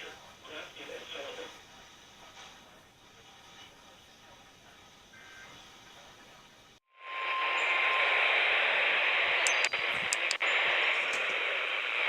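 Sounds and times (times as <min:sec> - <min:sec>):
radio static hiss: 0:00.0 - 0:12.0
sharp clicks: 0:09.4 - 0:11.4.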